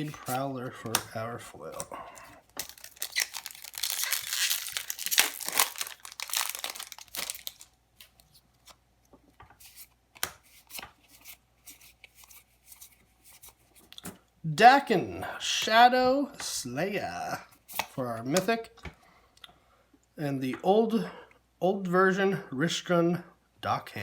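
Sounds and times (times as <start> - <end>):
foil wrapper tearing and crumpling: 2.4 - 8.2.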